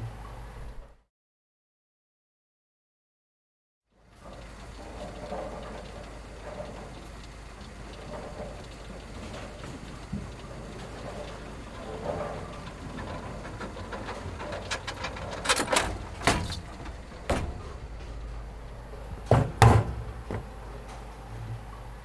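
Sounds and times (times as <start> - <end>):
steady low hum: 4.3 - 22.0
sharp knocks and clacks: 8.2 - 18.3, 19.1 - 20.6.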